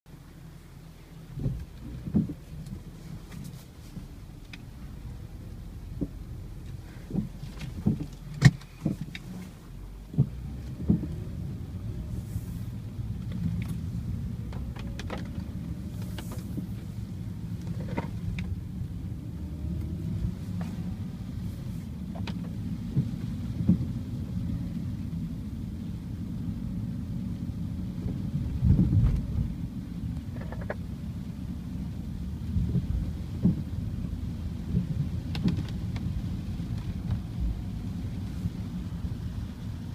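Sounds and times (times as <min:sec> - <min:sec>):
car engine low rumble: 0:00.0 - 0:39.9
sharp clicks and knocks: 0:01.4 - 0:04.7, 0:05.9 - 0:11.2, 0:13.1 - 0:16.9, 0:22.1 - 0:24.0, 0:30.2 - 0:30.9, 0:34.7 - 0:37.3.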